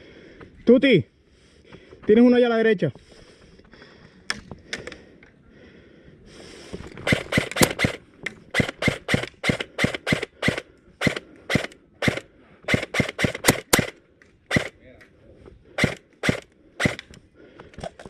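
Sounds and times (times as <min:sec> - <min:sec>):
airsoft rifle shots: 0:07.0 - 0:14.8, 0:15.8 - 0:17.1.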